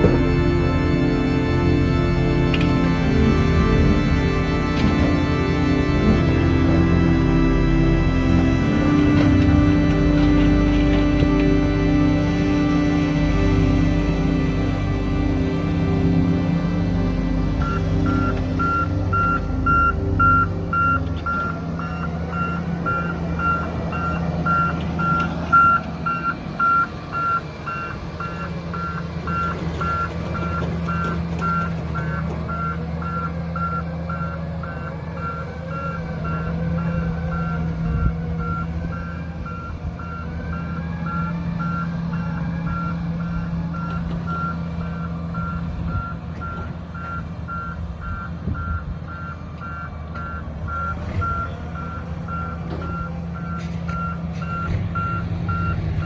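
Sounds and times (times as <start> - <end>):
heavy equipment diesel drone: 0.0 - 56.0
vehicle backup alarm beeping: 0.0 - 56.0.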